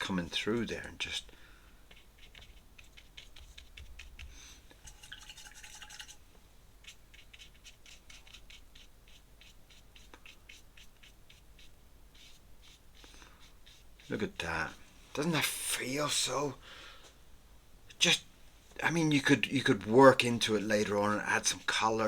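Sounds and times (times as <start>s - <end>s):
pen scratching on paper: 1.9s - 4.4s, 6.8s - 14.3s.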